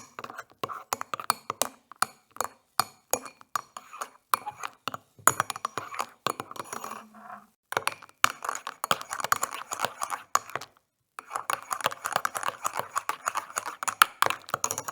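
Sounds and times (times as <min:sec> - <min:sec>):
spoon clinking in a cup: 0:01.1 - 0:07.1.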